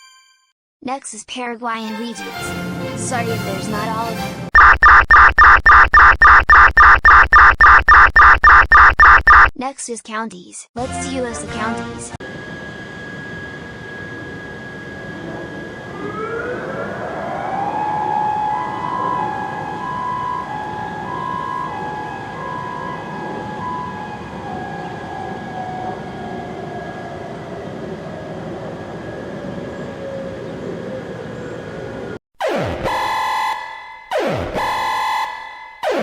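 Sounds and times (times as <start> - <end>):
pulsing tone: 4.6 - 9.5
warning siren wailing: 4.6 - 9.5, 12.2 - 36.0.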